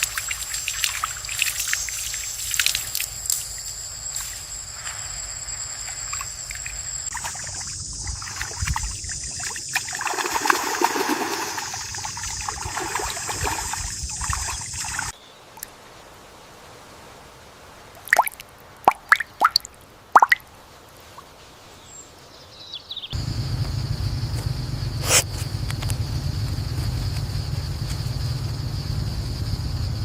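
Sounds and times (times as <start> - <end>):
water trickling and splashing: 0.0 - 4.5, 5.5 - 21.5
high-pitched whine: 0.0 - 15.1, 23.2 - 30.0.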